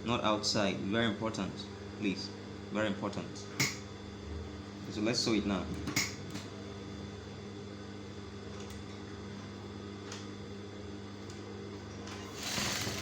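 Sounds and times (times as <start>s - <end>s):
sewing machine motor humming: 12.3s - 13.0s.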